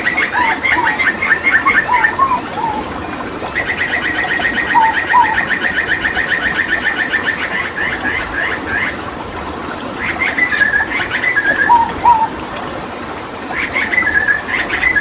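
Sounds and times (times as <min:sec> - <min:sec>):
bird singing: 0:00.0 - 0:02.8, 0:03.6 - 0:08.6, 0:10.2 - 0:12.3, 0:13.6 - 0:15.0
rushing water: 0:00.0 - 0:15.0.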